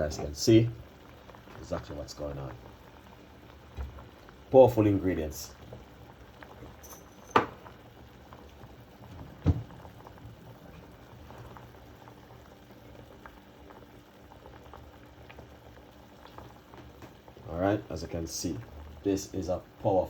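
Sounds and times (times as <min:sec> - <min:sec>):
tea bubbling in a pot: 0:00.0 - 0:20.0.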